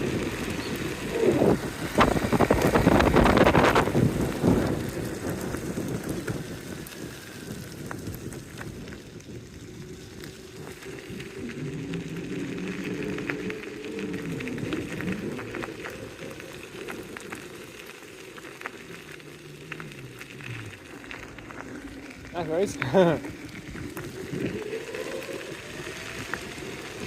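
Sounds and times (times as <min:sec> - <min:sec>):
skateboard rolling over dirt: 0:00.0 - 0:27.0
electric motor whine: 0:19.6 - 0:27.0.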